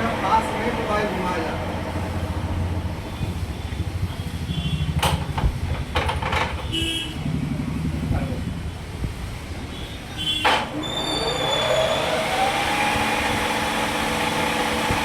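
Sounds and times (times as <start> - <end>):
lathe motor hum: 0.0 - 3.7, 10.9 - 15.0
sharp knocks: 4.9 - 6.8
short high squeals: 10.4 - 12.0.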